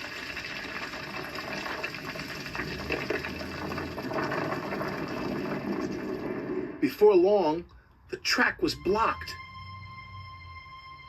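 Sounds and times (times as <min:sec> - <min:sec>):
deep rumble: 0:02.0 - 0:06.9.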